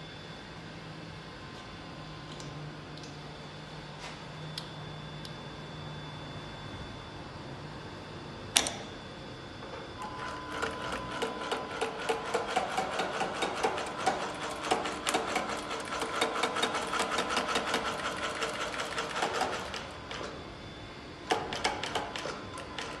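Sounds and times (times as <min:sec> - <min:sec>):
stitching machine ticking and humming: 0:09.7 - 0:20.4, 0:21.2 - 0:23.0.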